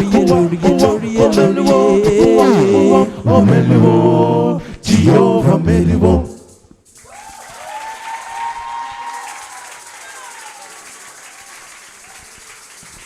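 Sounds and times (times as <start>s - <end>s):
a cappella group singing in harmony: 0.0s - 6.7s.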